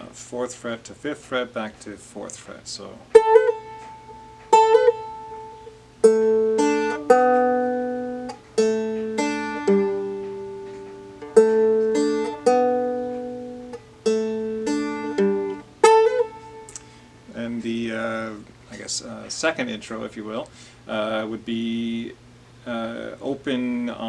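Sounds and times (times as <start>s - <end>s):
plucked string melody: 3.0s - 18.2s.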